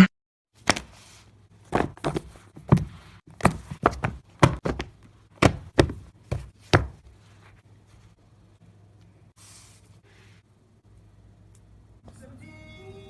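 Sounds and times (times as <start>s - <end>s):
sharp knocks with dull thuds: 1.7s - 7.1s.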